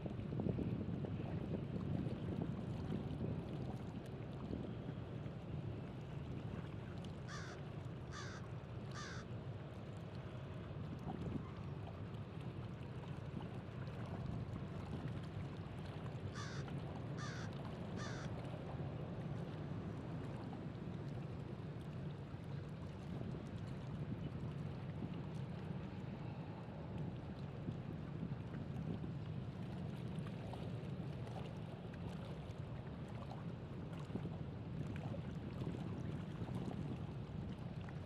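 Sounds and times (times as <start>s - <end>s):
wind and water rushing: 10.8s - 38.0s.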